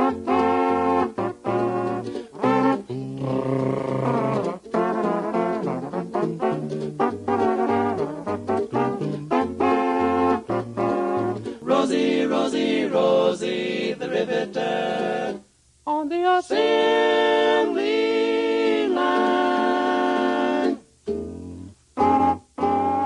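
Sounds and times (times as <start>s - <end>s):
swing band playing: 0.0s - 15.4s, 16.6s - 23.0s
vocal group singing harmonies: 2.0s - 4.6s, 11.2s - 21.6s.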